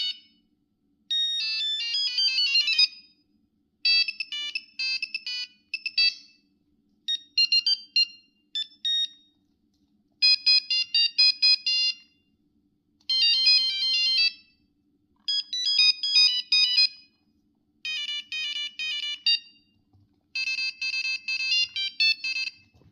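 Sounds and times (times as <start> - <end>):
monophonic phone ringtone beeps: 1.1 - 3.1, 3.9 - 6.4, 7.1 - 9.3, 10.2 - 12.2, 13.1 - 14.6, 15.2 - 17.1, 17.9 - 19.8, 20.4 - 22.8.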